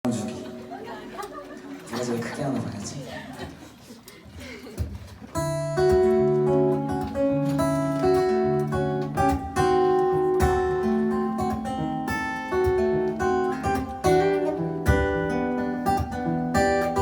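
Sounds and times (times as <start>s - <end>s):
acoustic guitar strumming chords: 5.3s - 17.0s.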